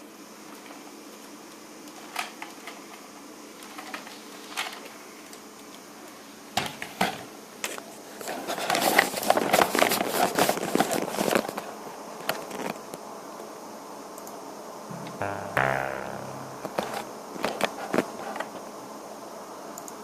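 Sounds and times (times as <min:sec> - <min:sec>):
low hum and hiss: 0:14.9 - 0:17.0
sharp clicks and taps: 0:14.9 - 0:17.0.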